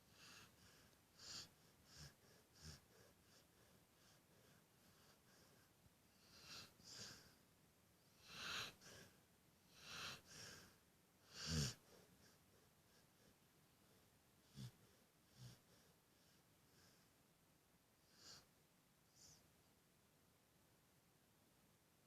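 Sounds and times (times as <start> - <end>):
dog snoring: 0.1 - 7.4, 8.0 - 9.1, 9.7 - 13.3, 13.9 - 17.0, 18.0 - 18.5.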